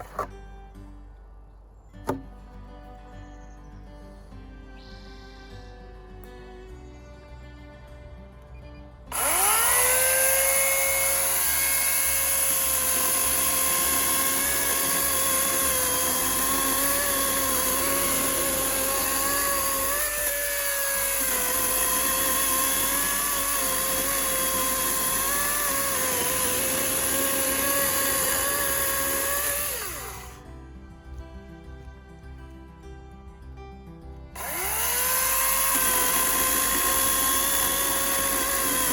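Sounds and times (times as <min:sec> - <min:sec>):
electric chainsaw whine: 0:00.0 - 0:00.3, 0:09.1 - 0:30.5, 0:34.4 - 0:38.9.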